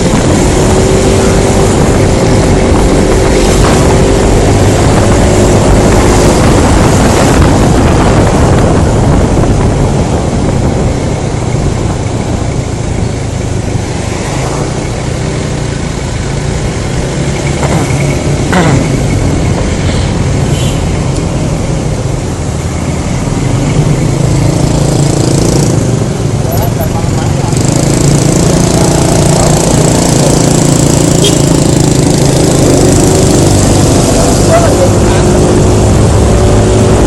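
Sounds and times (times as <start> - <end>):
traffic: 0.0 - 37.0
wind rushing over microphone: 0.0 - 37.0.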